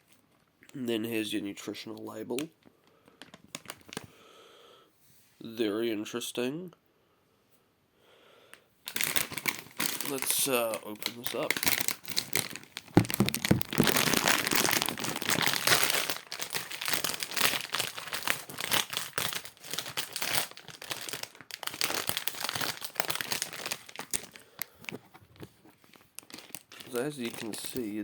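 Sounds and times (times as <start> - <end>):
plastic bag crinkling: 2.1 - 4.1, 8.9 - 28.0.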